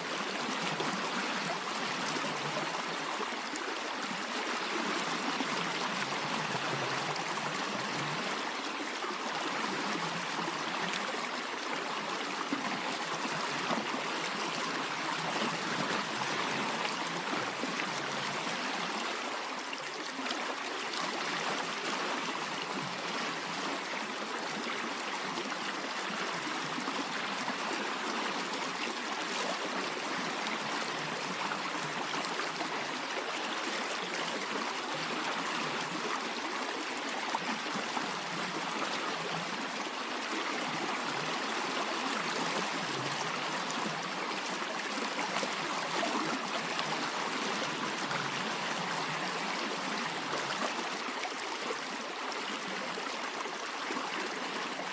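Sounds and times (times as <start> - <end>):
stream babbling over stones: 0.0 - 54.9.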